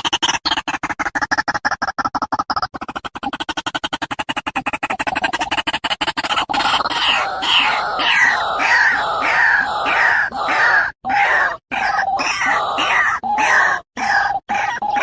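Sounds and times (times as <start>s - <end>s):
bird harsh descending calls: 6.5s - 15.0s.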